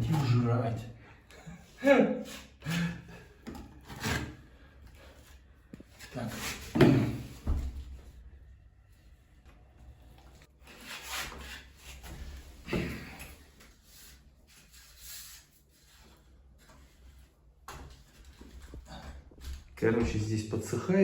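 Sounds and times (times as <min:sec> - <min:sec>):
rubbing and scraping handling noises: 0:02.2 - 0:07.4, 0:08.9 - 0:20.0.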